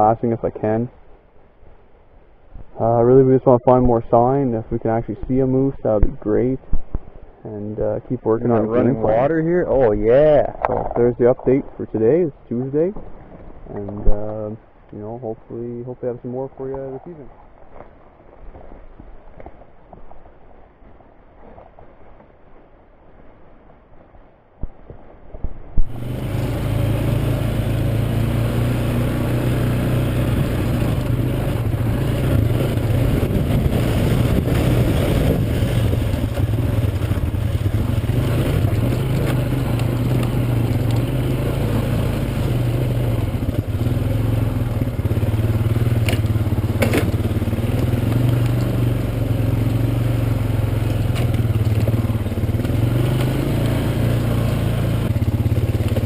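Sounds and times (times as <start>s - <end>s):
road noise: 0.0s - 20.5s, 25.8s - 56.0s
vehicle engine running: 25.9s - 56.0s.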